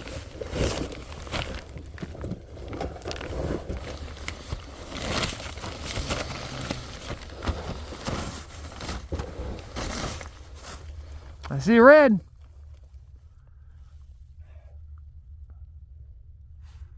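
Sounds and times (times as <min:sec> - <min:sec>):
person crawling rustling and scraping: 0:00.0 - 0:11.6
steady low rumble: 0:12.3 - 0:16.9.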